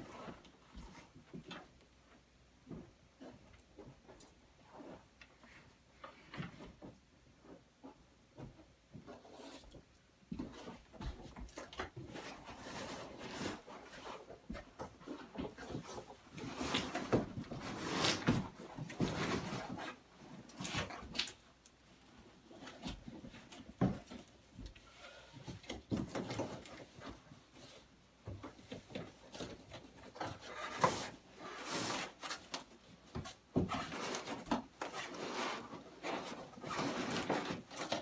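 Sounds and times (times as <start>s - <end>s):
cardboard scraping and rubbing: 12.0s - 14.4s, 15.0s - 20.0s, 28.8s - 38.0s.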